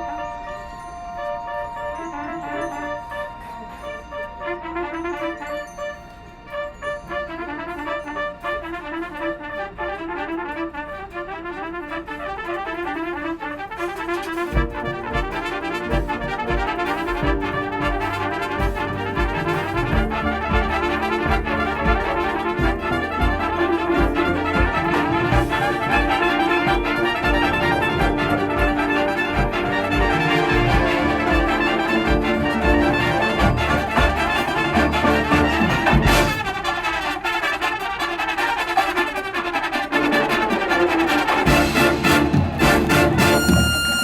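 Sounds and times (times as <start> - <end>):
brass line playing: 0.0 - 44.0
drums with low hits: 14.5 - 36.8, 41.5 - 44.0.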